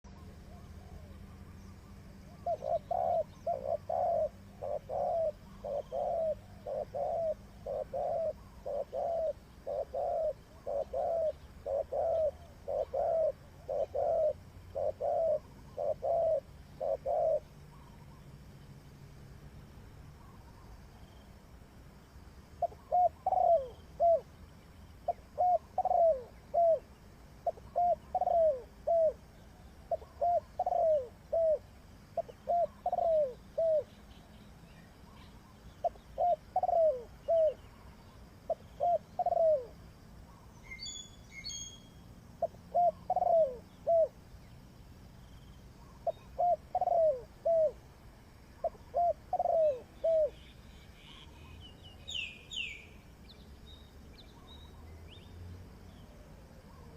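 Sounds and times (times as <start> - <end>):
small bird chirps: 0.1 - 18.8, 22.6 - 47.8, 48.6 - 56.9
dove cooing: 2.2 - 18.3, 22.6 - 24.3, 25.0 - 34.0, 35.7 - 40.5, 42.4 - 44.2, 45.8 - 47.8, 48.6 - 51.4.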